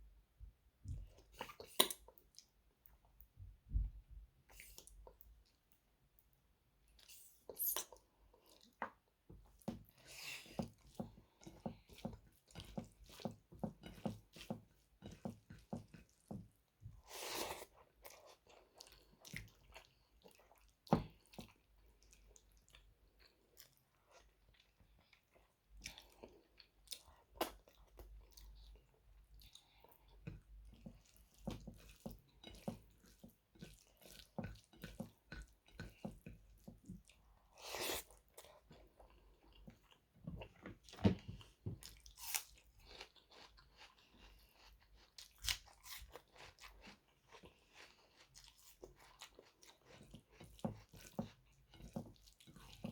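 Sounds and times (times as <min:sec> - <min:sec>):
person chewing food: 0:06.8 - 0:52.9.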